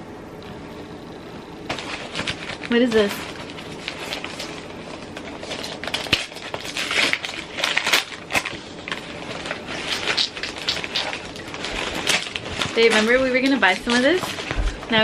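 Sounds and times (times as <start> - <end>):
packaging crinkling: 1.6 - 15.0.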